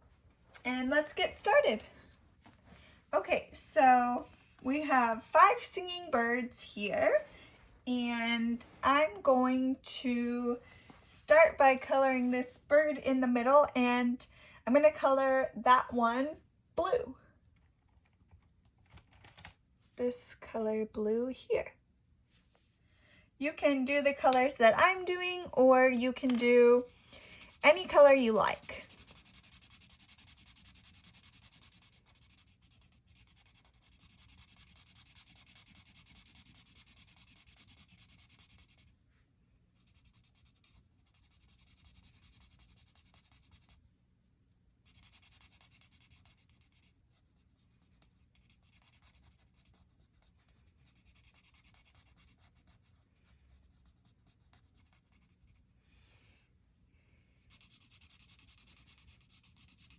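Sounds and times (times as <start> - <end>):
marker scratching on paper: 23.9 - 39.0, 39.8 - 43.9, 44.8 - 55.7, 57.4 - 59.9.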